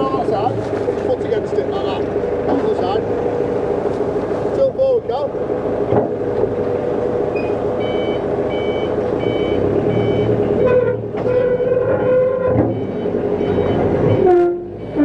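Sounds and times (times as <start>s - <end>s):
back-up alarm beeping: 7.3s - 11.9s, 12.7s - 15.0s.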